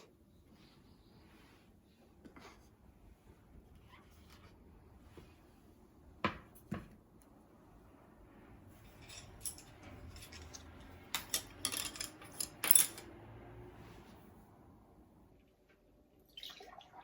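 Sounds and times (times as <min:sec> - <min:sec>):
clicks clinks and scrapes of objects: 0:08.8 - 0:13.1.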